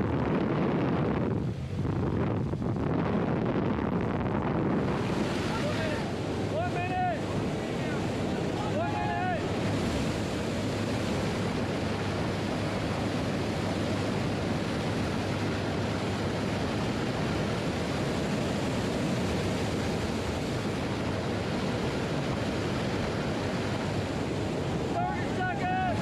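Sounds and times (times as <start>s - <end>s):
jet engines rushing: 0.0s - 26.0s.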